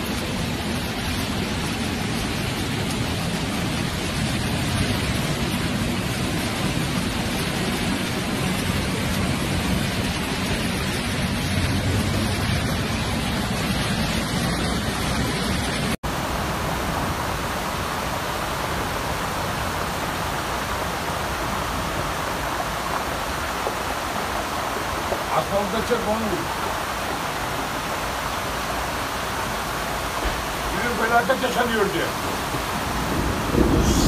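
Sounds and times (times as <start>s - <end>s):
floodwater rushing: 0.0s - 34.0s.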